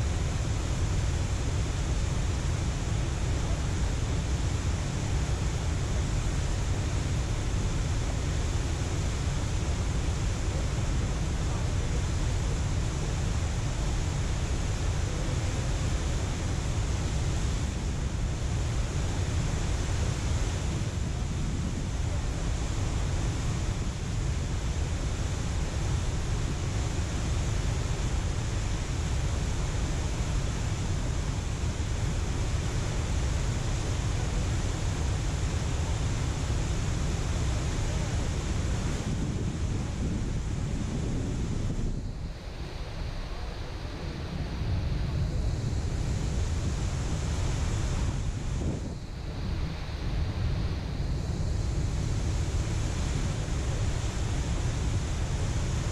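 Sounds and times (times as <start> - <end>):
water rushing through spillway: 0.0 - 41.7
wind buffeting microphone: 37.4 - 42.4, 44.0 - 54.4.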